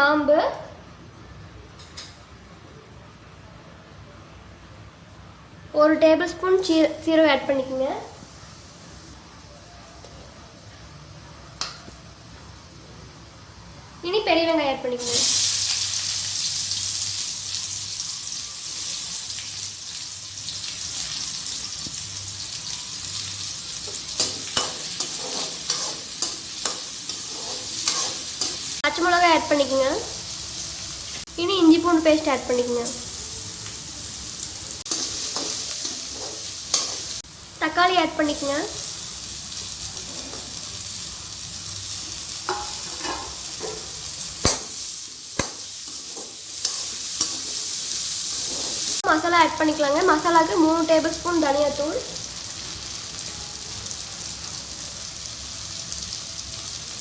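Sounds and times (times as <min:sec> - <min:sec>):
onions sizzling in oil: 0:11.6 - 0:57.0
spatula scraping a pan: 0:24.2 - 0:28.7.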